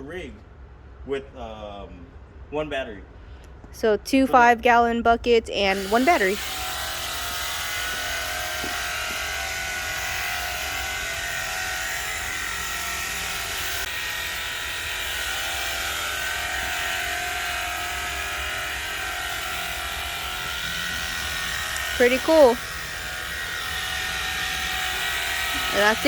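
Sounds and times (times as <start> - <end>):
pressure washer humming: 5.5 - 26.0.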